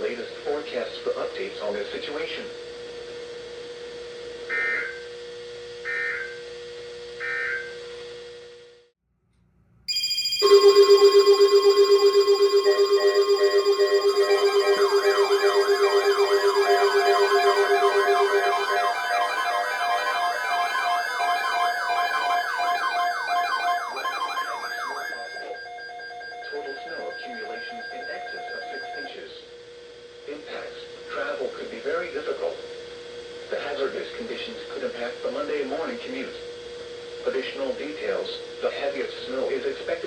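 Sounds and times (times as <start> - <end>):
steady electronic tones: 9.9 - 29.1
two-tone digital chirps: 9.9 - 29.1
siren-like alert sweeps: 9.9 - 29.2.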